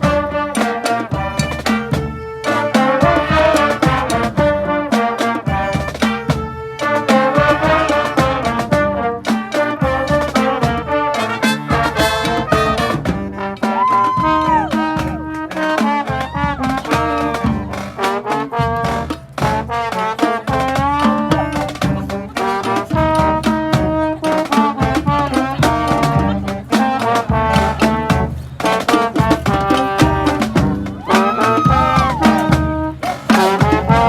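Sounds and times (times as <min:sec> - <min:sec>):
trumpets and trombones playing: 0:00.0 - 0:34.0
drum hits: 0:07.2 - 0:34.0.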